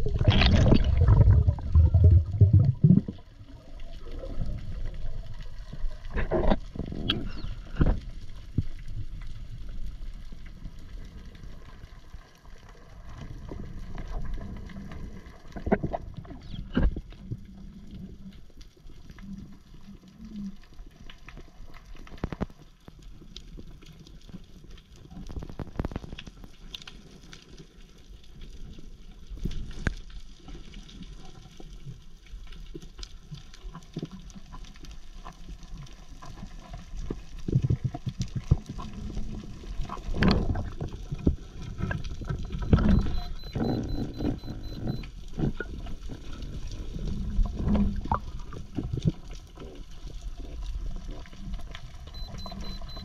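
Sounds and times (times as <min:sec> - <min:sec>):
water sloshing: 0:00.0 - 0:03.4
underwater low rumble: 0:00.0 - 0:53.0.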